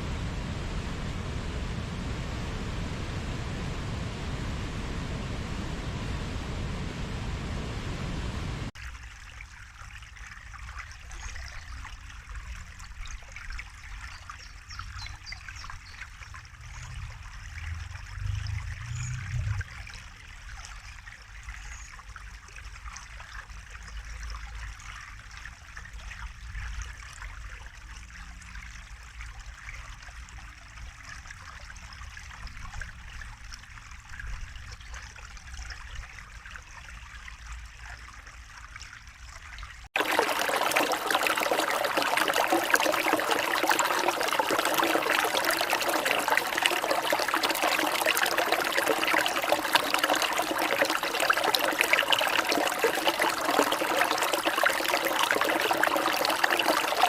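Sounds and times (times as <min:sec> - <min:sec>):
low rumble: 0:00.0 - 0:08.8, 0:16.5 - 0:19.8
stream trickling over rocks: 0:08.7 - 0:57.0.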